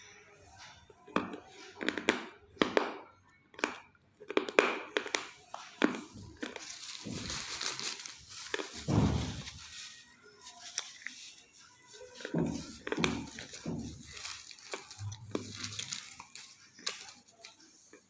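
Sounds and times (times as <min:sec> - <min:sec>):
crunching and chewing: 0:03.5 - 0:18.0.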